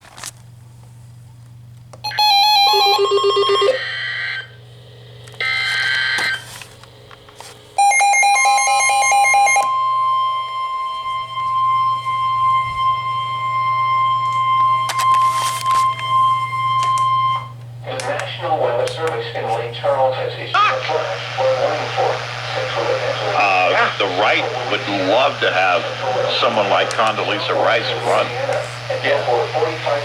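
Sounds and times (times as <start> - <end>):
steady attention tone: 7.8 - 30.0
low hum: 9.6 - 30.0.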